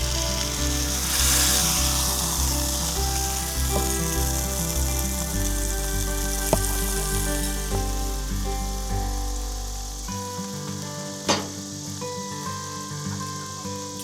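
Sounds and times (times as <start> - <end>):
background music with bass line: 0.0 - 10.3
food sizzling in a frying pan: 0.0 - 14.0.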